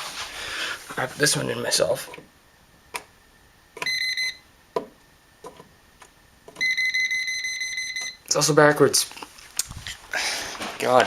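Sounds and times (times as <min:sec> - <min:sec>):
voltage tester beeping: 0:03.8 - 0:04.4, 0:06.6 - 0:08.3.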